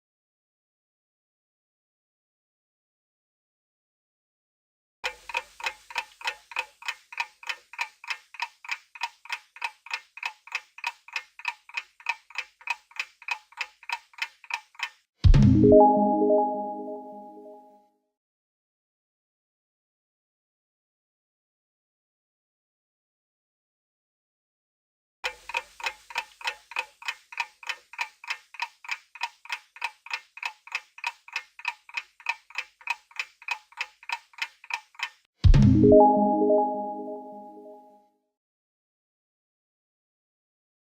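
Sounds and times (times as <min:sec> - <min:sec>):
clock ticking: 0:05.0 - 0:15.1, 0:25.2 - 0:35.3
rising bell-like notes: 0:15.4 - 0:17.7, 0:35.7 - 0:37.9.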